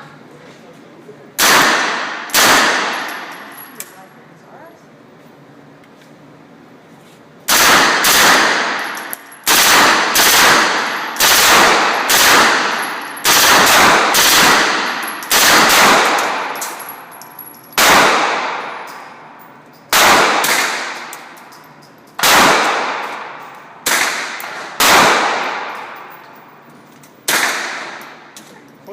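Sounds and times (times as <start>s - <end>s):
gunshots with echoing decay: 1.4s - 3.5s, 7.5s - 17.1s, 17.8s - 19.2s, 19.9s - 21.4s, 22.2s - 26.4s, 27.2s - 28.2s.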